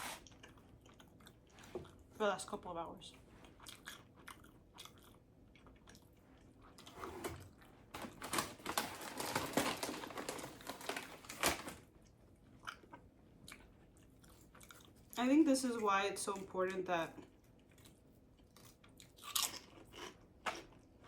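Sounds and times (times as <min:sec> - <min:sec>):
crunchy chewing: 0:00.0 - 0:02.1, 0:03.4 - 0:07.8, 0:12.0 - 0:15.2, 0:17.1 - 0:21.0.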